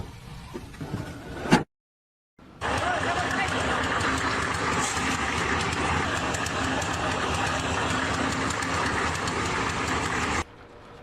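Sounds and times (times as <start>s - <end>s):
heavy machinery running: 2.5s - 11.0s.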